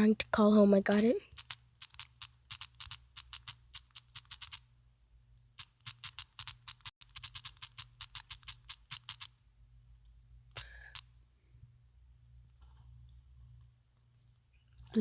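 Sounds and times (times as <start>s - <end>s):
keyboard keys clicking: 0.9s - 4.6s, 5.6s - 9.3s.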